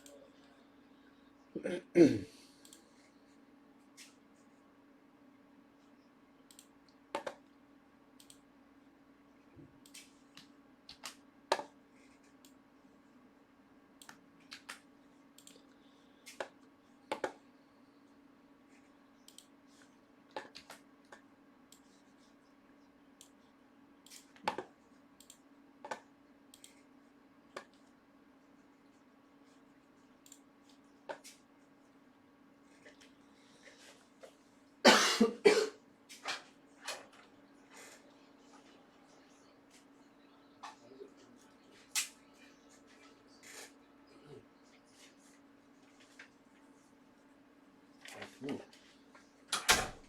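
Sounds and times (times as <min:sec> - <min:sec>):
faint electrical hum: 0:00.0 - 0:50.0
keyboard and mouse clicks: 0:06.5 - 0:07.5, 0:09.8 - 0:11.8, 0:14.0 - 0:17.4, 0:24.0 - 0:26.8.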